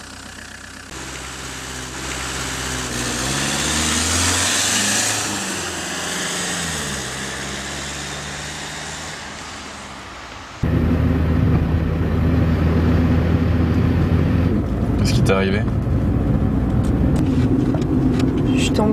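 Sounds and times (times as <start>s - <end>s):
car engine accelerating: 0.0s - 18.9s.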